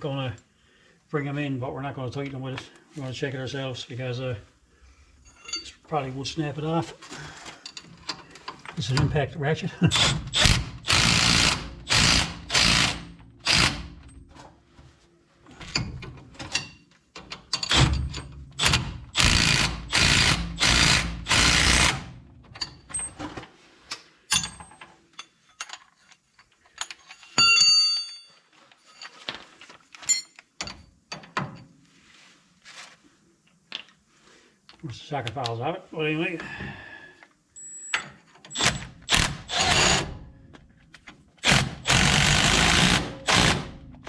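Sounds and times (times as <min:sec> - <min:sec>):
impact ratchet running bolts: 0:09.9 - 0:14.1, 0:17.6 - 0:22.8, 0:38.5 - 0:40.1, 0:41.4 - 0:43.8
ringing metal clink: 0:27.2 - 0:28.4.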